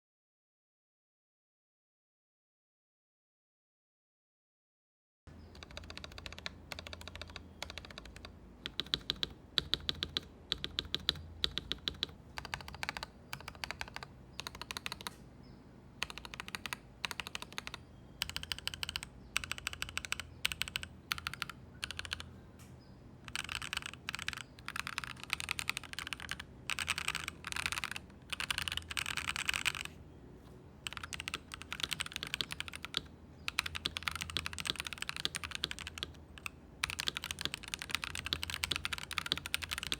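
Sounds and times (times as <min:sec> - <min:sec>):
mechanical keyboard typing: 0:05.4 - 0:15.2, 0:16.0 - 0:22.3, 0:23.2 - 0:30.0, 0:30.8 - 0:39.9.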